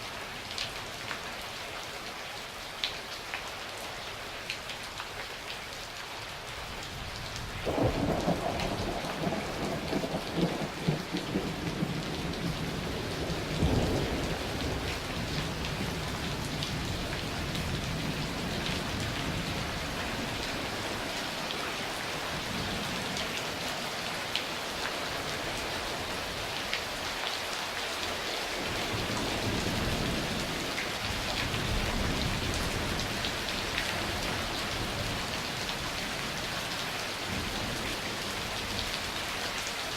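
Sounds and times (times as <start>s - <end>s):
steady rain falling: 0.0s - 39.9s
thunder crackling and rumbling: 7.6s - 21.0s, 28.6s - 35.8s.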